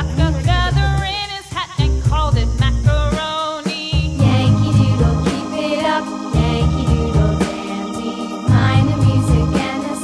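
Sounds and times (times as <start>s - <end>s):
steady bass beat: 0.0s - 1.2s, 4.0s - 9.9s
person singing: 3.3s - 10.0s.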